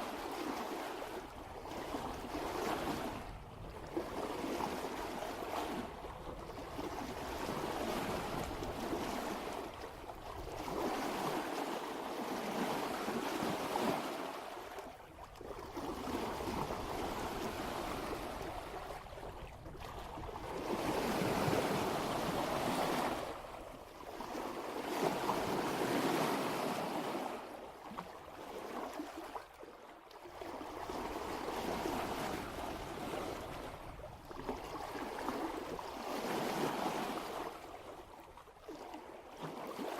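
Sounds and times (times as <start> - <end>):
water rushing past boat hull: 0.0 - 29.5.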